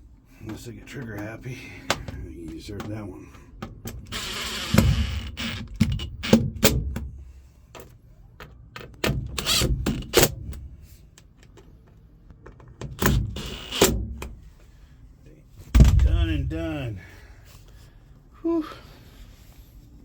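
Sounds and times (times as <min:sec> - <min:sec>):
power driver bursts: 0:04.1 - 0:06.8, 0:09.4 - 0:10.3, 0:13.0 - 0:14.0.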